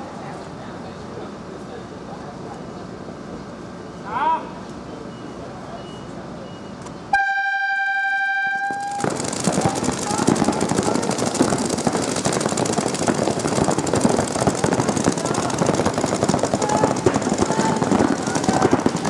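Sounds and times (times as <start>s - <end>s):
electronic buzzer tone: 7.1s - 9.0s
clatter: 8.6s - 19.0s
crowd clapping: 8.6s - 19.0s
voices shouting: 15.1s - 19.0s.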